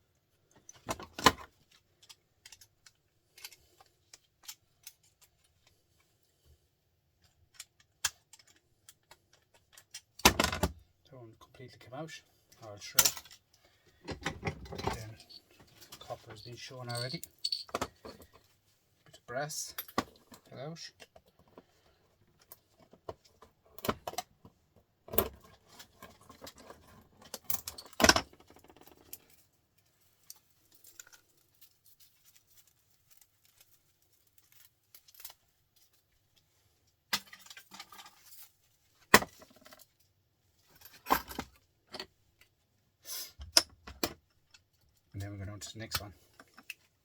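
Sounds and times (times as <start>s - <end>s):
metallic clinks and rattles: 14.1s - 18.5s, 25.9s - 36.6s.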